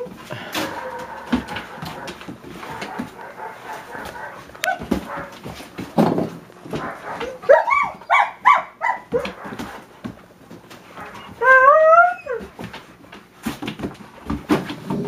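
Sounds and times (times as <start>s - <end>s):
dog yelping: 6.8s - 9.6s, 11.0s - 12.5s
dog whining: 7.0s - 9.6s, 11.0s - 12.5s.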